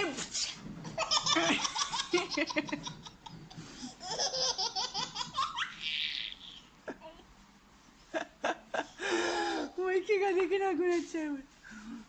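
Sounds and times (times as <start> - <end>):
baby belly laughing: 0.9 - 7.2.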